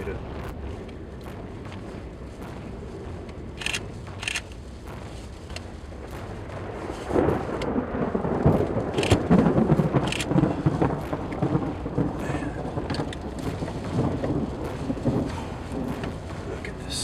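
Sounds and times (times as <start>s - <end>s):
thunder rumbling: 0.0s - 17.0s
sharp ticks: 3.6s - 4.6s, 9.0s - 9.3s.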